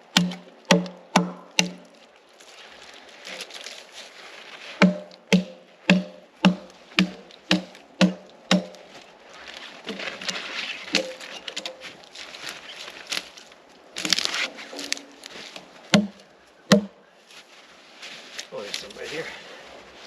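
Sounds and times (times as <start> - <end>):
hatchet chopping branches: 0.0 - 2.0, 4.8 - 8.9, 9.8 - 12.0, 14.0 - 17.0
branches rustling: 0.0 - 20.0.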